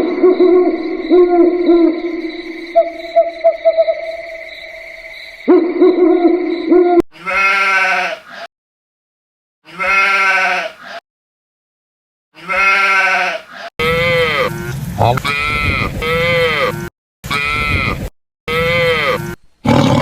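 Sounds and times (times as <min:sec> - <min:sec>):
hooting animal call: 0:00.0 - 0:08.5
wavering bleats: 0:07.1 - 0:08.5, 0:09.6 - 0:11.0, 0:12.4 - 0:20.0.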